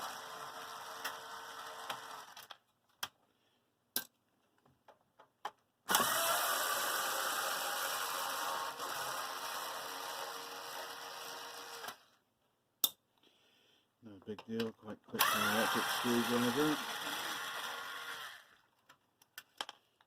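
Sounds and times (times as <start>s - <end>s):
electric screwdriver running: 0.0s - 2.5s, 5.9s - 12.0s, 15.2s - 18.6s.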